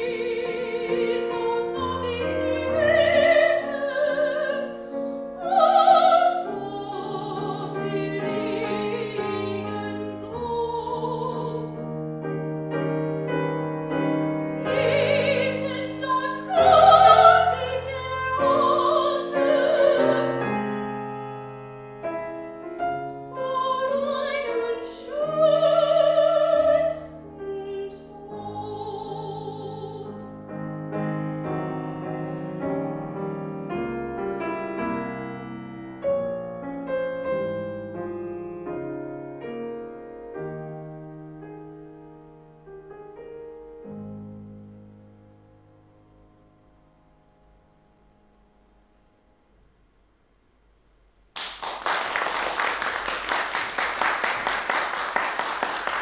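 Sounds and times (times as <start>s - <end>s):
operatic singing voice: 0.0s - 4.8s, 5.4s - 11.8s, 14.0s - 20.5s
piano accompaniment: 0.0s - 49.6s, 51.4s - 56.0s.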